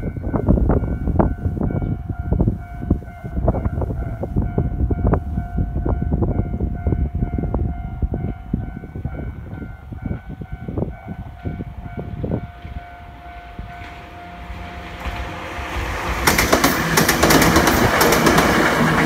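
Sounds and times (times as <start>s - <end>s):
train rumbling: 0.0s - 19.0s
train wheels knocking: 15.0s - 19.0s.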